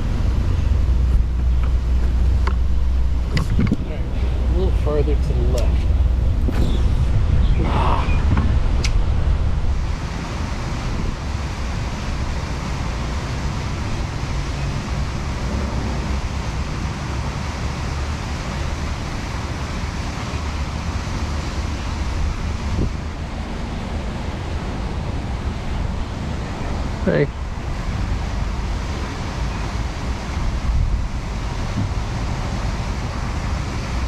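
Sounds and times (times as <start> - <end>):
wind rumbling on microphone: 0.0 - 34.0
sharp click: 8.3 - 9.0.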